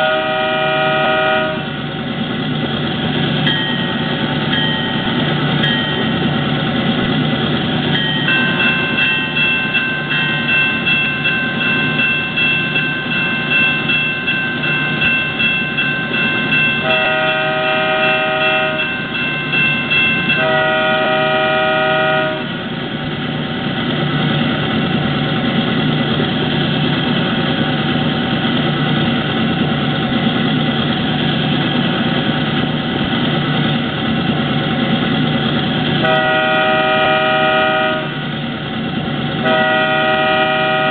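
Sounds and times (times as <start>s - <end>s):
locomotive horn blasts: 0.0s - 1.8s, 16.8s - 18.9s, 20.3s - 22.6s, 36.0s - 38.2s, 39.4s - 40.9s
diesel locomotive engine idling: 0.0s - 40.9s.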